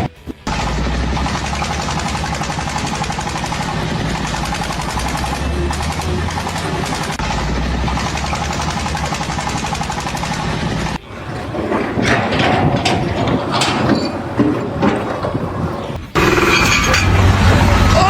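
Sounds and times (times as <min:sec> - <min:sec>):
heavy machine running: 0:00.0 - 0:18.0
clanks and knocks: 0:00.5 - 0:18.0.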